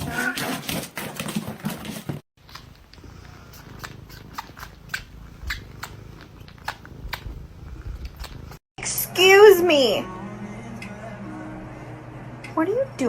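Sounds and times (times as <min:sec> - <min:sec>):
cat purring: 0:02.4 - 0:08.6.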